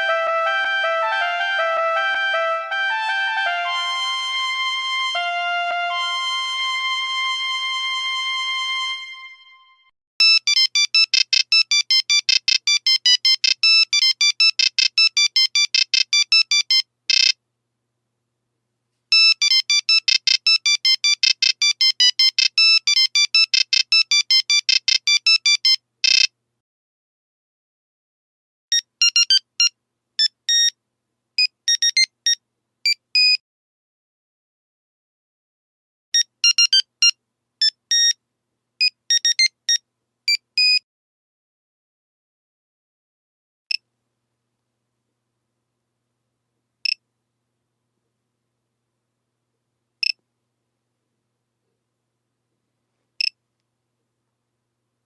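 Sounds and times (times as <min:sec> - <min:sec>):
ringtone of held notes: 0:00.0 - 0:17.3, 0:19.1 - 0:26.3
ringtone of rapid short beeps: 0:10.2 - 0:17.4, 0:19.1 - 0:26.3, 0:28.7 - 0:30.7, 0:31.7 - 0:32.1, 0:36.2 - 0:36.9, 0:39.1 - 0:40.8.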